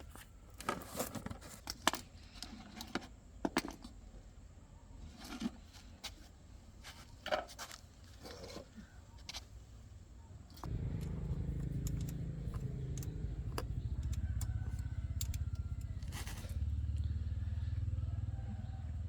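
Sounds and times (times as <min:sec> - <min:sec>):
small engine running: 0:10.6 - 0:19.0.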